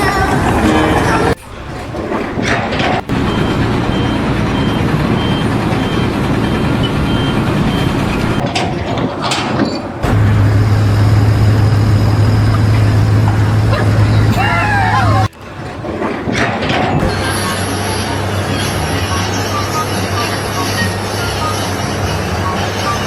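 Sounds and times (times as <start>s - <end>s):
low engine drone: 0.0s - 8.4s, 10.0s - 16.0s
heavy vehicle engine running: 0.0s - 23.0s
reversing alarm beeping: 3.0s - 8.9s, 9.6s - 15.3s, 17.0s - 23.0s.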